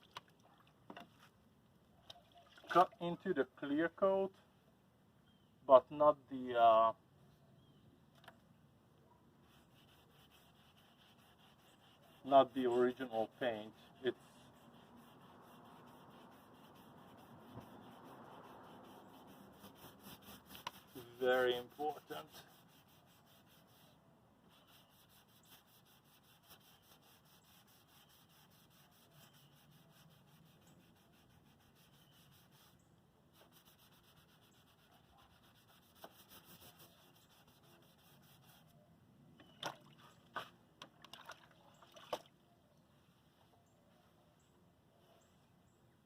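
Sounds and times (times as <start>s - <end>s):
wet sanding by hand: 9.4s - 38.7s.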